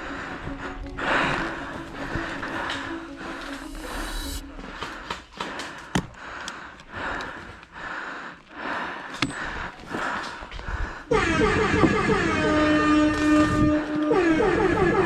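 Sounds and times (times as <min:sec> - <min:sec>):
music with sustained notes: 0:00.0 - 0:05.9
breath-like noise: 0:00.0 - 0:11.1.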